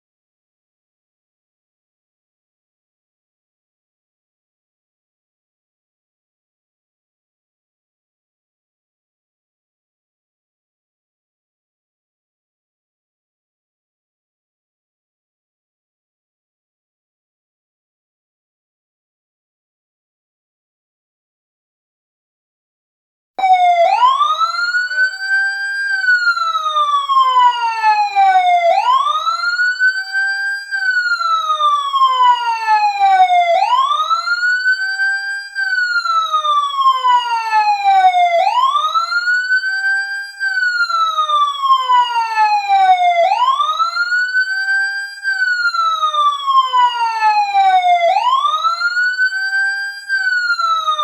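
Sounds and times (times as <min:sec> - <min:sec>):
fire truck siren wailing: 0:23.4 - 0:51.0.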